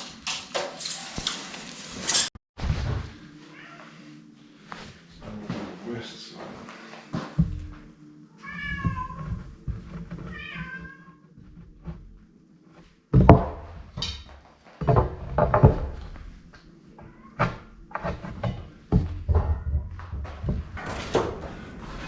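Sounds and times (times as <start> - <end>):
heavy knocks and thumps: 7.2 - 7.9, 8.6 - 12.2, 13.1 - 16.4, 17.0 - 21.6
cat meowing: 8.4 - 9.2, 10.3 - 11.2.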